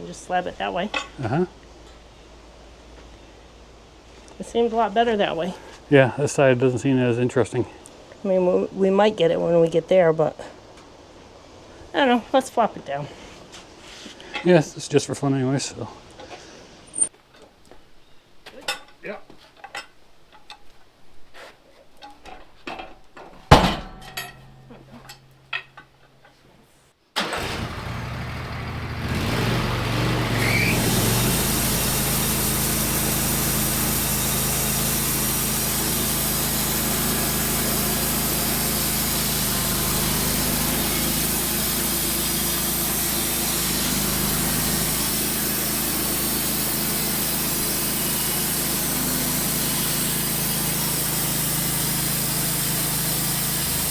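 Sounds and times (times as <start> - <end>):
loud thud: 23.5 - 24.1
sawmill engine running: 27.2 - 53.9.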